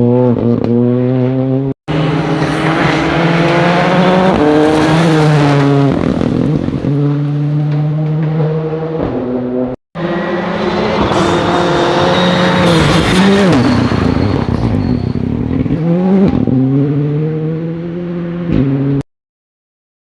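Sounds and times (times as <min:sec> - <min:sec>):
rally car engine revving: 0:00.0 - 0:19.0.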